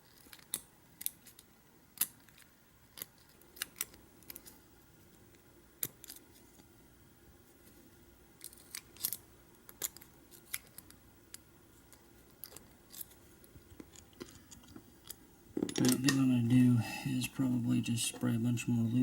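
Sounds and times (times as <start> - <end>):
lock picks clicking and scraping: 8.4 - 13.2.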